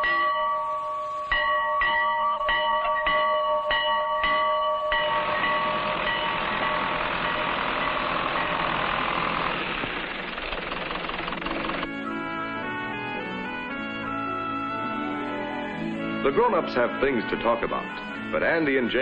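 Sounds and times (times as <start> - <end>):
bell ringing repeatedly: 0.0 - 8.8
mechanical running noise: 5.1 - 11.9.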